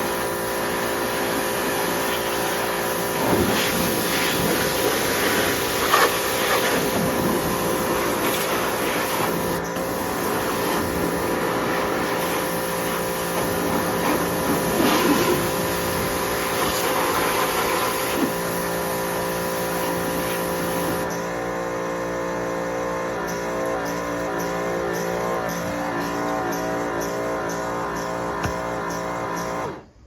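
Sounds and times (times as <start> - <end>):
high-pressure water jet hiss: 0.0 - 21.1
pressure washer motor hum: 0.0 - 30.0.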